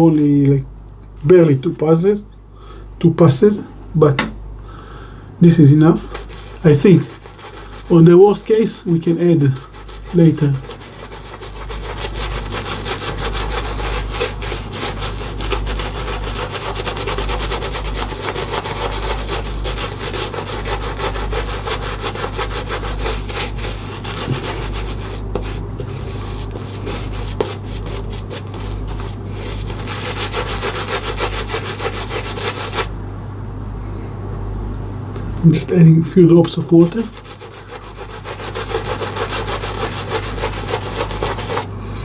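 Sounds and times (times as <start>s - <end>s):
shaving brush scrubbing lather: 5.8s - 32.9s, 36.8s - 41.7s.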